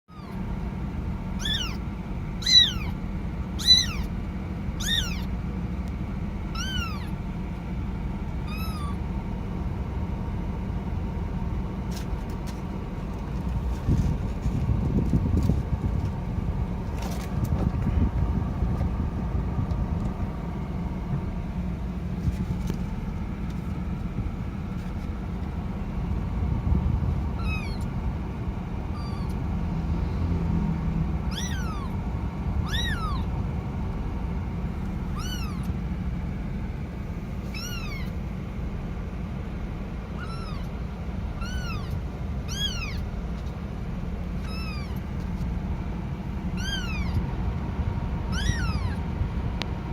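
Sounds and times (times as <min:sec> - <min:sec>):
kitten meowing: 0:00.1 - 0:00.4, 0:01.4 - 0:01.8, 0:02.4 - 0:03.0, 0:03.6 - 0:04.2, 0:04.8 - 0:05.3, 0:06.5 - 0:07.2, 0:08.4 - 0:09.0, 0:27.4 - 0:27.9, 0:29.0 - 0:29.4, 0:31.3 - 0:32.0, 0:32.6 - 0:33.3, 0:35.1 - 0:35.8, 0:37.4 - 0:38.2, 0:40.2 - 0:40.7, 0:41.4 - 0:43.1, 0:44.4 - 0:45.1, 0:46.6 - 0:47.2, 0:48.3 - 0:49.0
low rumble: 0:00.2 - 0:49.9.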